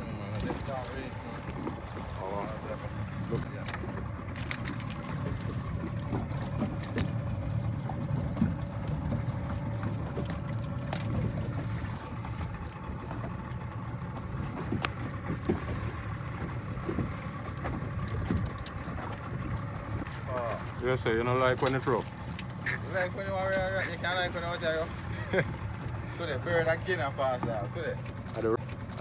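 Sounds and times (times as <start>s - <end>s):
boat engine rumbling: 0.0s - 29.0s.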